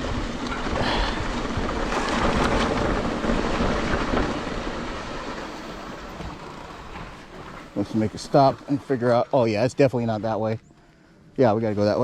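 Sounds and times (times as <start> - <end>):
bike rattles and clicks: 0.0 - 9.0
wind buffeting microphone: 0.0 - 10.4
bike tyres rolling on dirt: 0.0 - 12.0.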